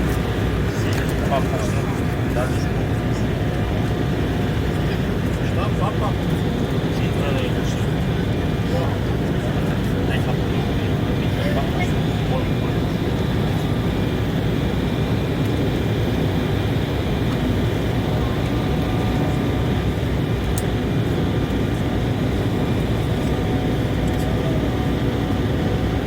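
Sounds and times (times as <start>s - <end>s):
faint steady whines: 0.0s - 26.0s
jet engine hum: 0.0s - 26.0s.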